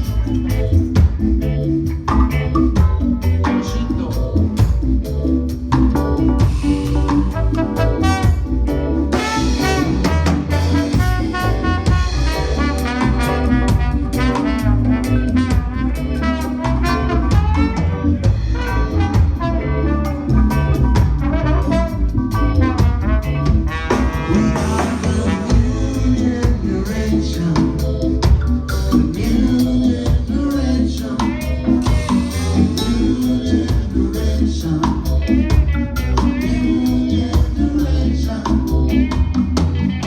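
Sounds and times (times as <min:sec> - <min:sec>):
drum kit: 0:00.0 - 0:40.0
heavy bass: 0:00.0 - 0:40.0
horn section melody: 0:06.9 - 0:27.0.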